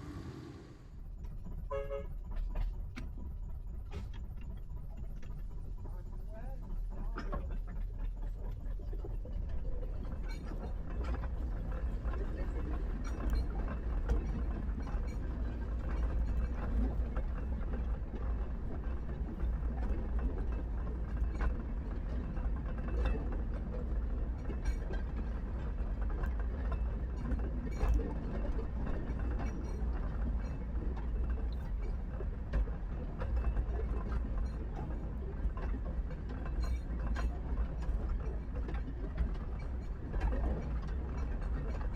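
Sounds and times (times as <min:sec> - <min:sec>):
low train rumble: 0:00.0 - 0:41.9
train wheels rattling and clicking: 0:00.0 - 0:41.9.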